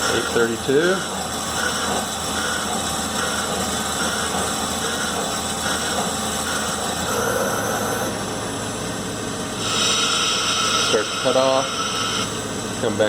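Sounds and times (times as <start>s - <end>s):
lathe machining: 0.0s - 13.0s.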